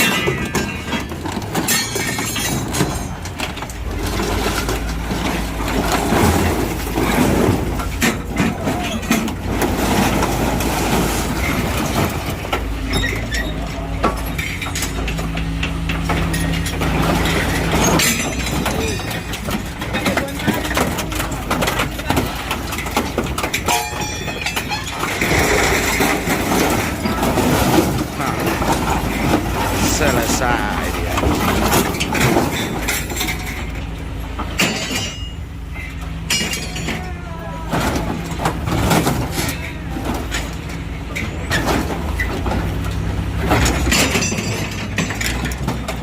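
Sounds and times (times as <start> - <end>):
excavator running: 0.0 - 46.0
hydraulic shear crushing sheet metal: 0.0 - 46.0
metal cracking and crunching: 0.0 - 46.0
metal scraping squeal: 12.9 - 13.8.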